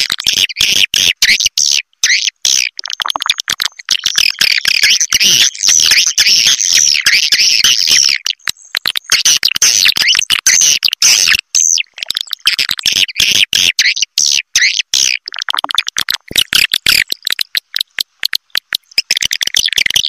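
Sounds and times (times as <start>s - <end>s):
rapid high bird chirping: 3.9s - 15.2s, 16.3s - 20.0s.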